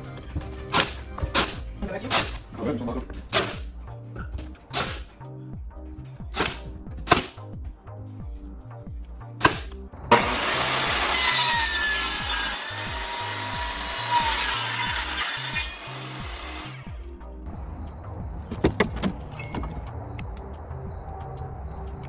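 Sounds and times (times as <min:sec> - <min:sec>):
sharp knocks: 0:00.7 - 0:02.5, 0:06.4 - 0:07.4, 0:09.4 - 0:09.8
power saw cutting wood: 0:09.4 - 0:17.0.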